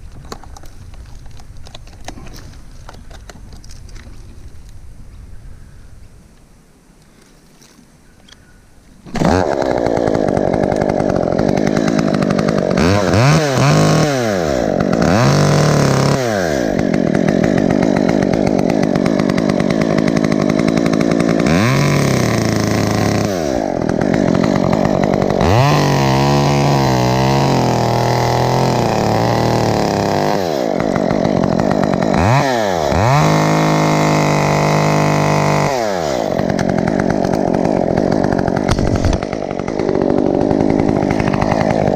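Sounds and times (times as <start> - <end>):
chainsaw revving: 9.0 - 41.9.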